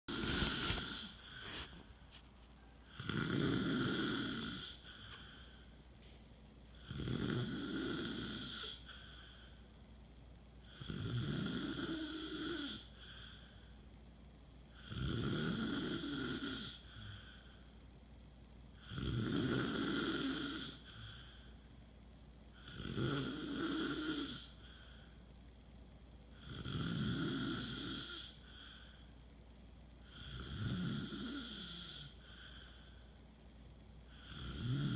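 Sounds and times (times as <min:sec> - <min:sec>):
man snoring loudly: 0:00.1 - 0:01.4, 0:02.9 - 0:05.0, 0:06.8 - 0:09.0, 0:10.7 - 0:13.1, 0:14.8 - 0:17.2, 0:18.8 - 0:21.2, 0:22.6 - 0:24.5, 0:26.4 - 0:28.4, 0:30.1 - 0:32.4, 0:34.1 - 0:34.9.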